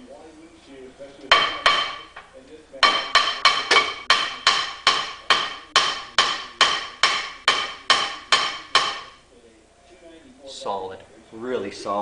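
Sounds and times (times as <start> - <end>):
hammer striking ringing metal rotor: 2.8 - 9.2.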